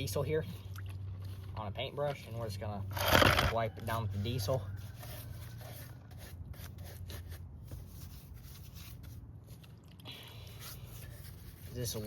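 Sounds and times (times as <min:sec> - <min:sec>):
paintbrush brushing and rubbing: 0:04.1 - 0:09.6, 0:10.5 - 0:12.0.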